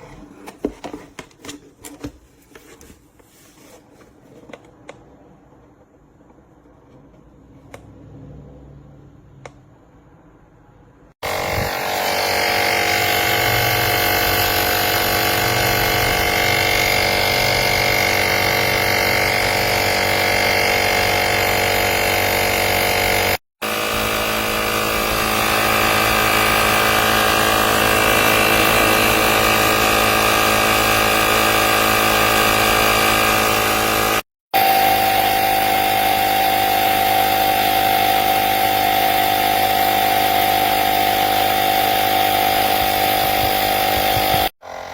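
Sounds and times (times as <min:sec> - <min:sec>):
air compressor buzzing: 0:11.2 - 0:44.9.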